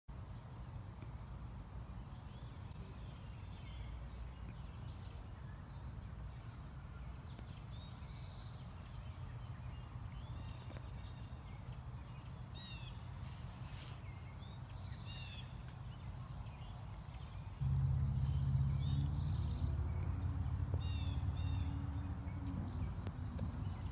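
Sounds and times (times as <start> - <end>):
birds chirping and calling: 7.2 - 23.9
steady low rumble: 17.6 - 23.9.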